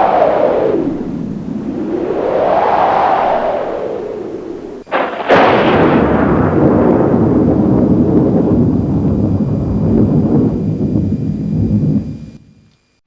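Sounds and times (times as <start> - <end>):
explosion boom and rumble: 4.6 - 12.7
sharp bang: 4.8 - 8.6.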